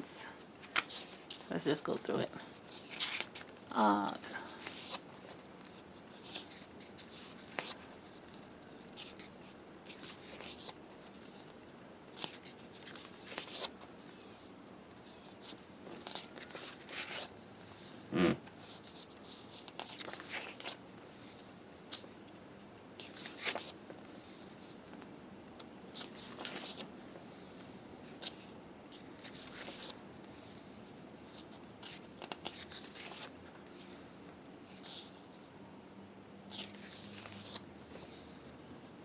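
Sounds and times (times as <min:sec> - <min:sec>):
book pages turning: 0:00.6 - 0:03.7, 0:04.5 - 0:22.2, 0:23.0 - 0:35.3, 0:36.5 - 0:38.8.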